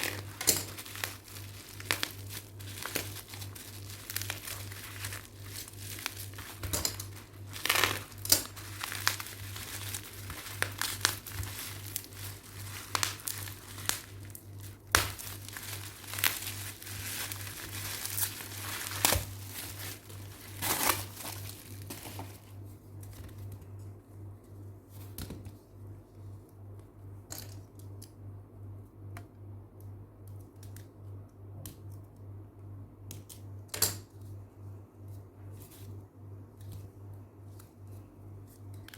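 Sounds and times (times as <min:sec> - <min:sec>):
packaging crinkling and tearing: 0:00.0 - 0:22.5
steady low hum: 0:00.0 - 0:38.9.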